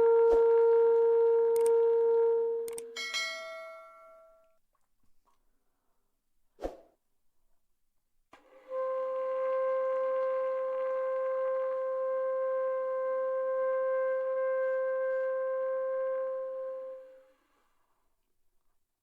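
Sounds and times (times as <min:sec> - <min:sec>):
saxophone note: 0:00.0 - 0:03.2, 0:08.4 - 0:17.3.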